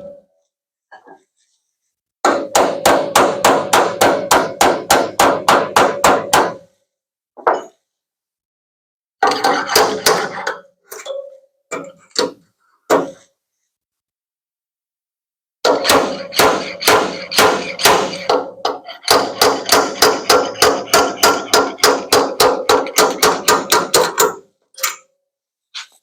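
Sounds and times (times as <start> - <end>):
hammer striking sheet metal: 2.2 - 6.7, 9.2 - 10.6, 15.6 - 24.4.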